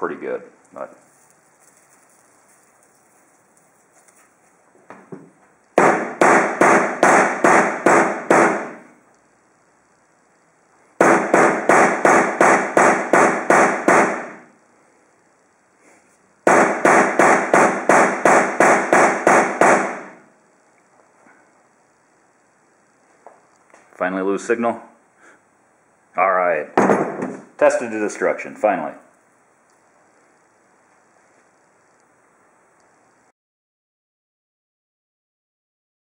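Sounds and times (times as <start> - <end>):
hammer striking on metal: 5.8 - 8.8, 11.0 - 14.4, 16.5 - 20.1.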